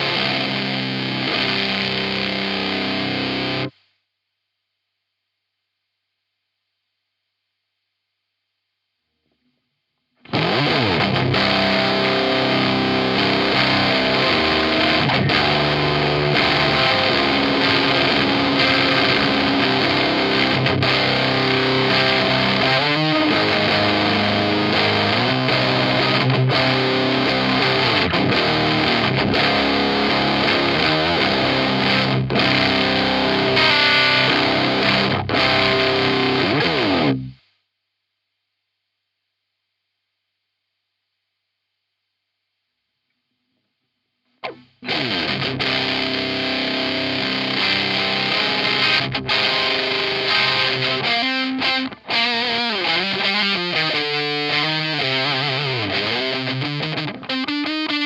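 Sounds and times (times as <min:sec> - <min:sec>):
distorted electric guitar riff: 0:00.0 - 0:03.8, 0:10.2 - 0:37.4, 0:44.4 - 0:58.0.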